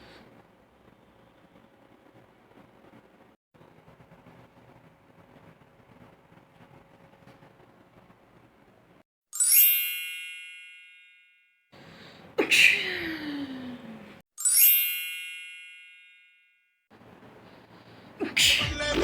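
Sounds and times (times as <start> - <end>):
bell-like chime: 9.3 - 11.7, 14.4 - 16.8
person sneezing: 12.4 - 13.7, 18.2 - 19.0
music: 18.6 - 19.0.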